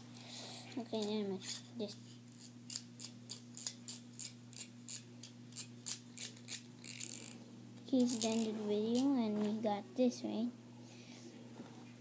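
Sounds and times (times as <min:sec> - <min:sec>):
scissors snipping: 0:01.9 - 0:07.4.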